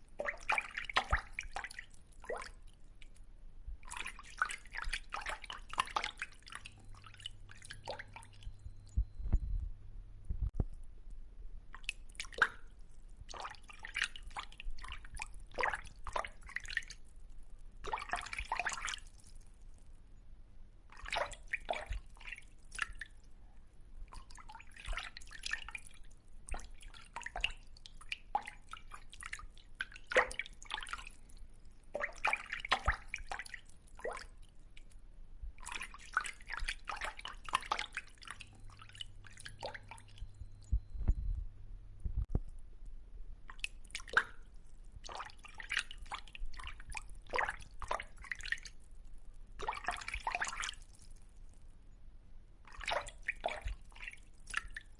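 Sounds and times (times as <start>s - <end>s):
water dripping and splashing: 0.0s - 9.4s, 11.7s - 19.9s, 20.9s - 23.3s, 24.1s - 35.0s, 35.6s - 40.8s, 43.4s - 51.6s, 52.6s - 54.9s
low thumps: 8.9s - 10.7s, 40.6s - 42.5s.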